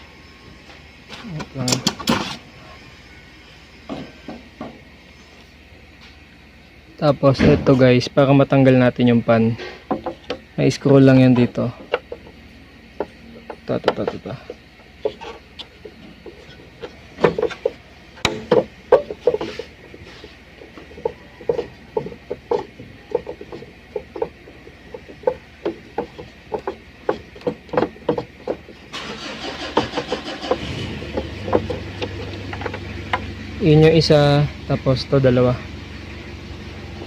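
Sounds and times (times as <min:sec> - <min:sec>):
background noise with low hum: 0:00.0 - 0:37.0.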